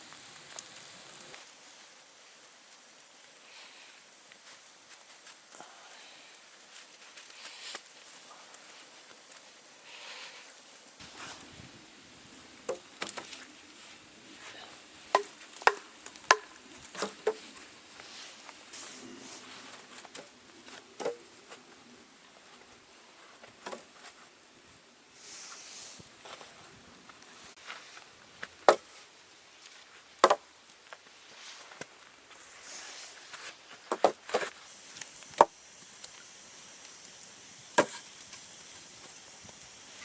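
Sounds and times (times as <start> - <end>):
sharp knocks and snaps: 15.1 - 17.5.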